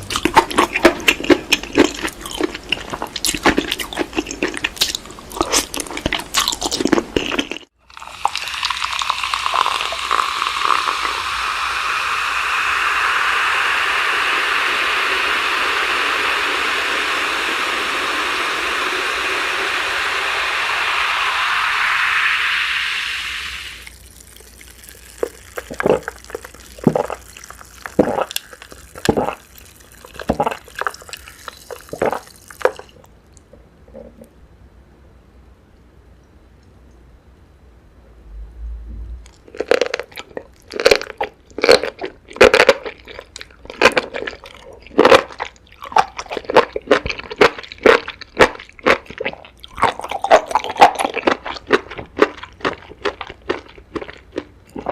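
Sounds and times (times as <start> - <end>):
crunchy chewing: 0.0 - 11.1, 23.9 - 33.1, 39.2 - 54.9
steady hiss: 8.0 - 32.8.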